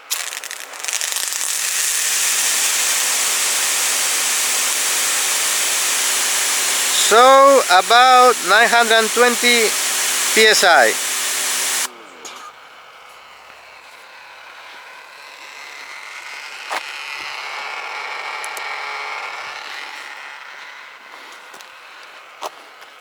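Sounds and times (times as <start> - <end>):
pressure washer spraying: 0.1 - 11.9
motor whine: 1.2 - 11.9.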